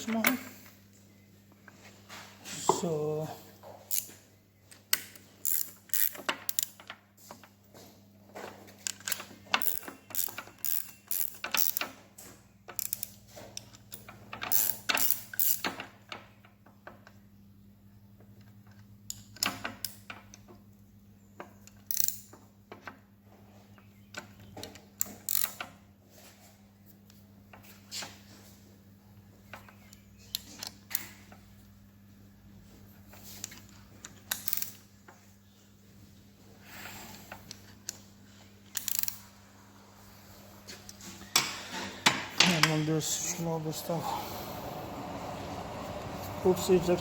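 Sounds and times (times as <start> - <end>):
ratchet wrench clicking: 5.4 - 6.8, 9.6 - 11.8, 14.5 - 15.6, 21.8 - 22.2, 25.3 - 25.6, 38.7 - 39.2.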